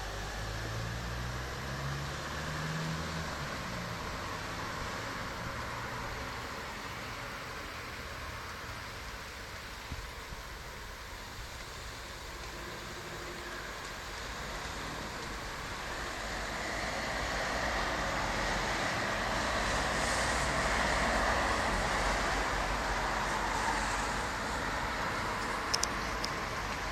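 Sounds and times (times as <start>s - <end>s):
heavy rain pouring: 0.0s - 26.9s
sharp clicks: 25.4s - 26.4s.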